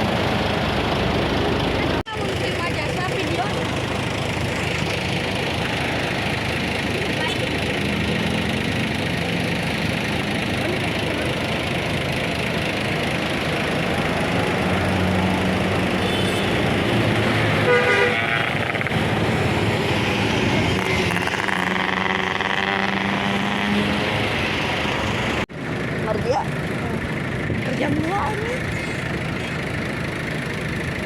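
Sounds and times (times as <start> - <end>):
bus engines running: 0.0 - 31.0
passing road traffic: 0.0 - 31.0
vehicle horn blast: 15.9 - 16.9, 17.6 - 18.7.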